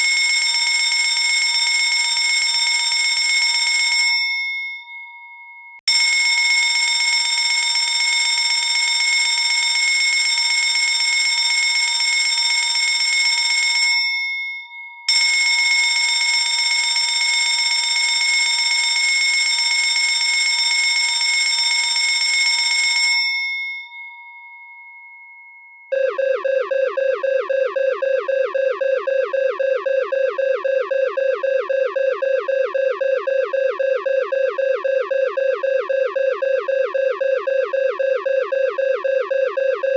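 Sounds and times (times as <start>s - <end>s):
electronic alarm falling tones: 25.9s - 39.9s.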